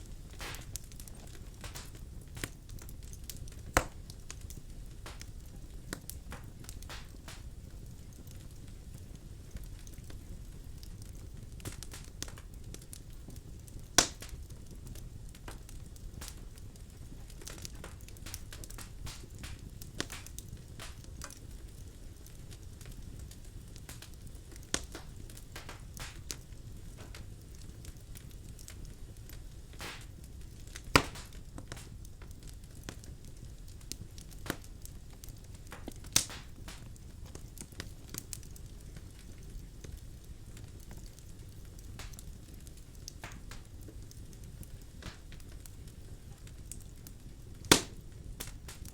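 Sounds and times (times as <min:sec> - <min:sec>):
fire crackling: 0:00.0 - 0:48.9
fire rumbling in fireplace: 0:00.0 - 0:48.9
loud sharp pop of fire: 0:00.3 - 0:05.3, 0:05.9 - 0:07.4, 0:14.0 - 0:14.4, 0:17.6 - 0:21.4, 0:24.7 - 0:26.4, 0:29.7 - 0:31.9, 0:35.6 - 0:38.3, 0:43.2 - 0:43.7, 0:45.0 - 0:45.4, 0:47.6 - 0:48.9.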